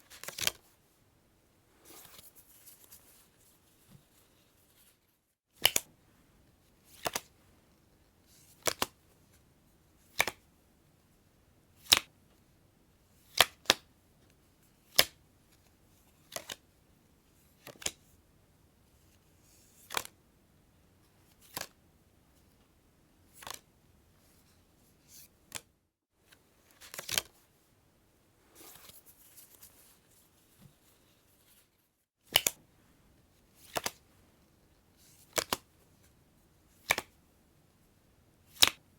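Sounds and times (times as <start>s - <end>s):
soft rustle of cards: 0.0s - 1.1s, 1.7s - 10.5s, 11.8s - 18.2s, 18.8s - 20.2s, 21.0s - 38.9s
playing cards snapping: 0.2s - 0.6s, 5.6s - 5.9s, 8.6s - 8.9s, 10.2s - 10.4s, 32.3s - 32.6s, 33.6s - 34.0s, 35.3s - 35.6s, 36.8s - 37.1s, 38.5s - 38.8s.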